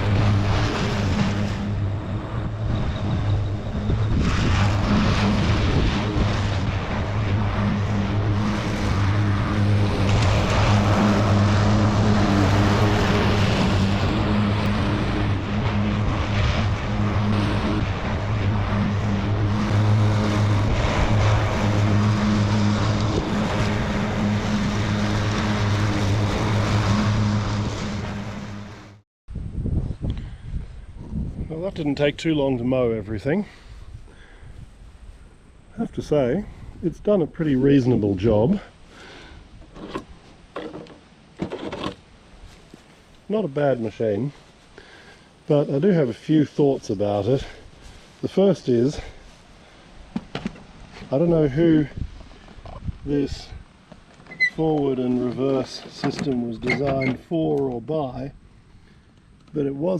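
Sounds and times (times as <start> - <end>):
ride-on lawn mower running: 0.0 - 29.0, 54.1 - 57.3.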